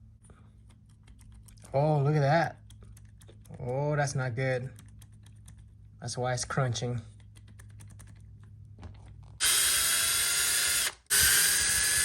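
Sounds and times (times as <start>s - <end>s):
electric drill motor whine: 9.4s - 12.0s.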